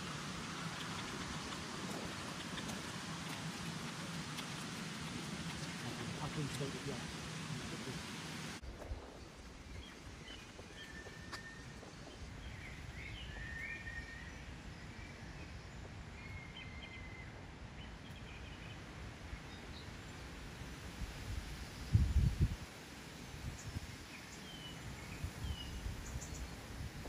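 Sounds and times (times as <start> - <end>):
rushing hiss: 0.0 - 8.6
songbird chirps and whistles: 9.7 - 14.5.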